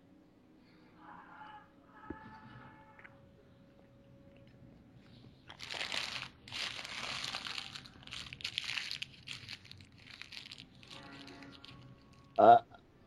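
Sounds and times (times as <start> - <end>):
crinkling rustling noise: 5.0 - 12.4.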